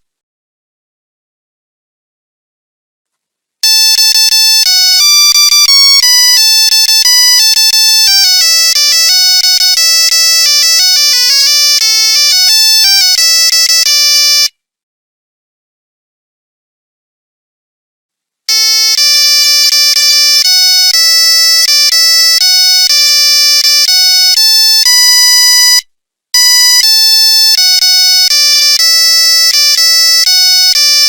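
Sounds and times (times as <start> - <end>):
electronic beeping ringtone melody: 3.6 - 14.5, 18.5 - 25.8, 26.4 - 31.0.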